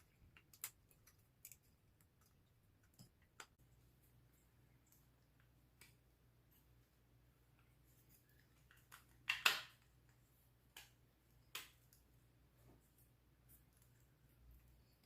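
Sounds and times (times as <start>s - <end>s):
faint clicks and taps: 0.0s - 6.6s.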